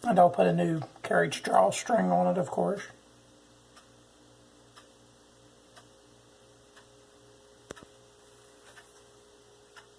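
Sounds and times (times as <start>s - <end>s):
faint ticks: 3.7s - 4.0s, 4.7s - 5.0s, 5.7s - 6.0s, 8.6s - 9.1s.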